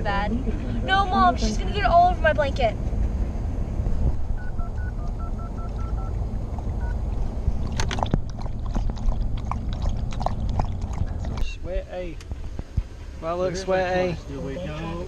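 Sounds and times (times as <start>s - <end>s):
roadside traffic rumble: 0.0s - 15.0s
wind: 0.0s - 15.0s
phone keypad beeps: 4.4s - 6.1s.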